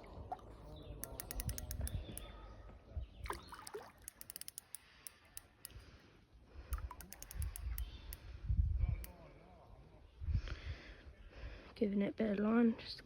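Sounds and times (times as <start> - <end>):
fishing reel ticking: 1.0 - 2.2, 4.0 - 5.8, 6.7 - 8.3.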